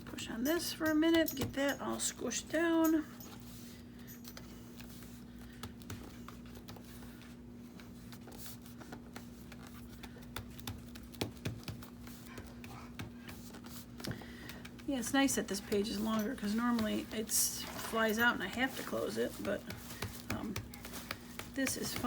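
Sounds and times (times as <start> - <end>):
paper and card rustling: 0.5 - 22.0
taps on paper: 8.8 - 14.9, 18.4 - 22.0.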